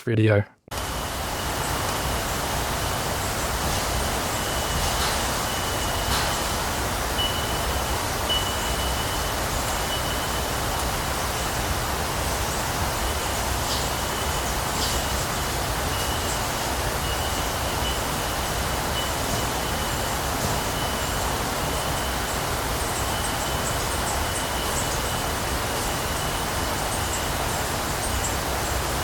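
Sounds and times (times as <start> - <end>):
steady hiss: 0.3 - 29.0.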